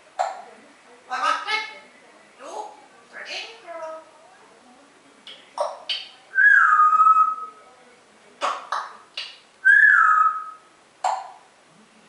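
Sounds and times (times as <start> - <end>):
parrot clicks and squawks: 5.3 - 6.1, 8.4 - 9.4
parrot whistling: 5.9 - 7.6, 9.2 - 10.7.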